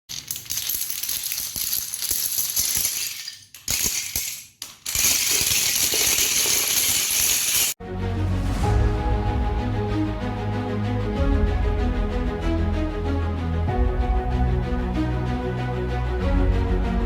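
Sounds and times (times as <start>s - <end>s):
fireworks crackling and hissing: 5.4s - 7.8s.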